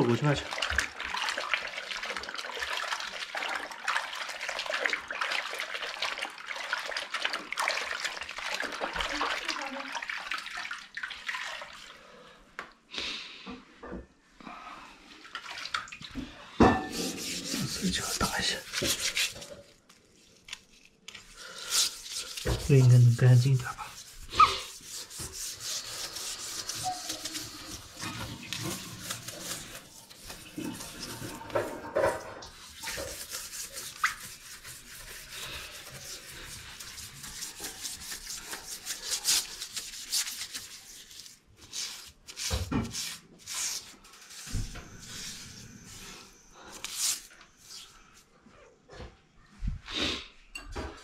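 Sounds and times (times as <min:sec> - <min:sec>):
steel wool scrubbing: 0:16.6 - 0:48.2.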